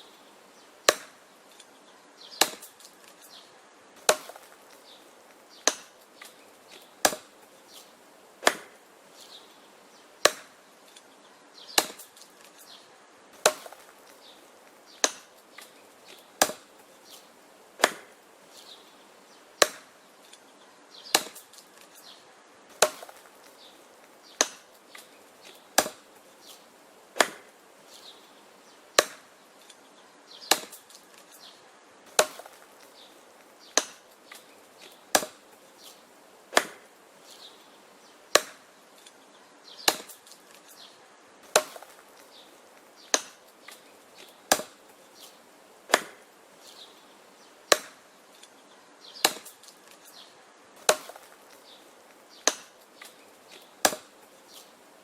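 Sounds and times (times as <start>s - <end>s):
axe chopping wood: 0.8s - 1.2s, 2.3s - 3.2s, 4.0s - 4.8s, 5.6s - 7.4s, 8.4s - 8.8s, 10.2s - 11.0s, 11.7s - 12.6s, 13.4s - 16.8s, 17.8s - 18.2s, 19.6s - 20.4s, 21.1s - 22.1s, 22.7s - 23.6s, 24.3s - 26.6s, 27.2s - 27.5s, 29.0s - 29.4s, 30.4s - 31.4s, 32.1s - 35.4s, 36.5s - 36.9s, 38.3s - 38.7s, 39.8s - 40.7s, 41.4s - 44.9s, 45.9s - 46.3s, 47.7s - 48.0s, 49.2s - 50.2s, 50.8s - 51.8s, 52.4s - 54.6s.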